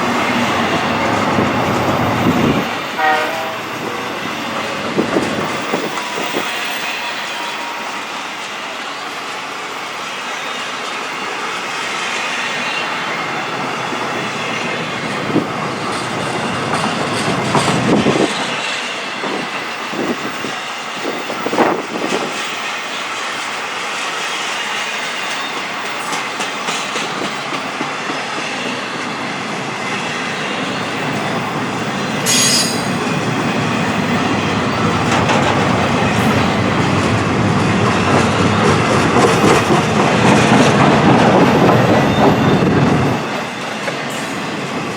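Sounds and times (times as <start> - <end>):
freight train wheels rumbling: 0.0 - 44.9
high squeal of wheels: 5.5 - 9.1, 32.2 - 33.2, 41.6 - 44.6
wheels clacking over rail joints: 15.3 - 18.6, 34.4 - 44.5.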